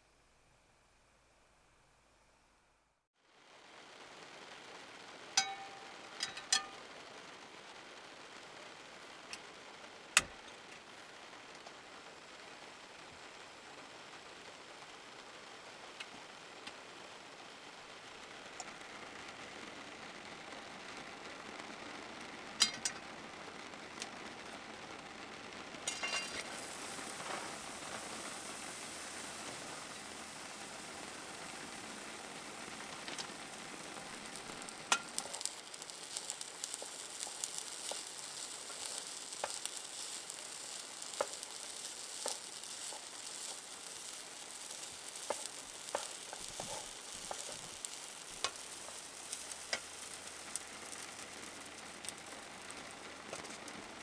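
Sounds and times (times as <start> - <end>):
food sizzling in a frying pan: 3.2 - 54.0
utensil clicking against pan: 34.3 - 52.2.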